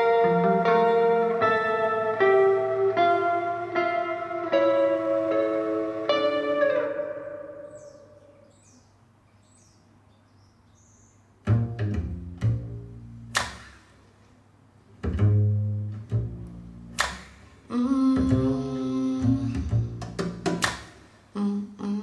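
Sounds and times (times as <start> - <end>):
string bass notes: 0.0 - 7.8, 11.5 - 13.7, 15.0 - 17.3, 18.1 - 20.7
sharp percussive clicks: 13.3 - 13.9, 16.9 - 17.5, 20.0 - 21.0.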